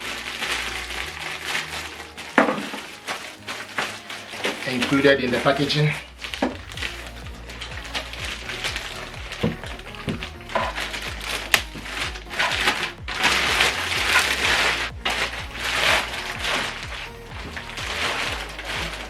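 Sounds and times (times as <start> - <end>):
background music: 0.0 - 19.0
plastic wrapping rustling: 0.0 - 19.0.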